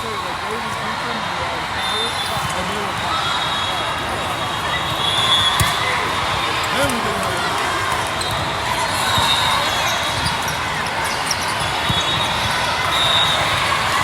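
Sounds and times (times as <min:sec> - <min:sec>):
crowd chatter: 0:00.0 - 0:14.0
volleyballs struck and bouncing: 0:05.3 - 0:10.5.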